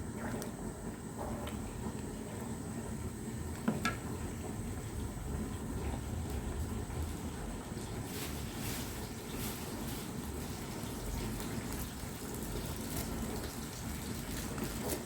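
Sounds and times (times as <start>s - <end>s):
stew bubbling in a pot: 0.0s - 15.0s.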